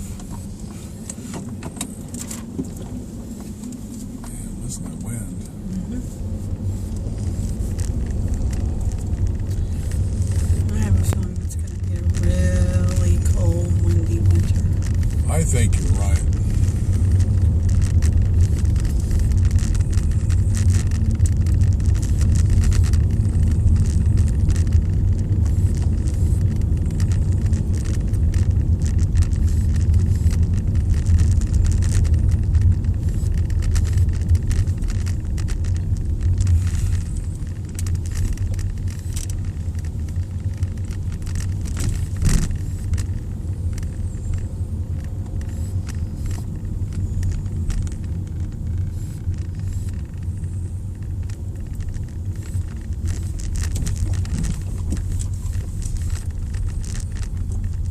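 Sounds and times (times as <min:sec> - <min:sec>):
truck rumbling: 0:00.0 - 0:57.9.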